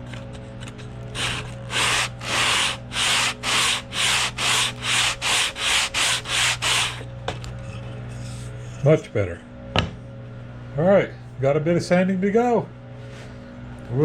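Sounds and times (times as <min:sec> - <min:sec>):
sanding wood by hand: 0:01.2 - 0:07.0.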